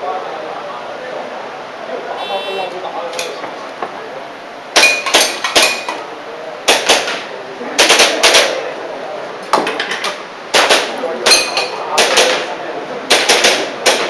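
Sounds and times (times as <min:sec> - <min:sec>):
airsoft pistol shots: 0:06.7 - 0:08.6, 0:10.5 - 0:11.0, 0:12.0 - 0:12.5, 0:13.1 - 0:14.0.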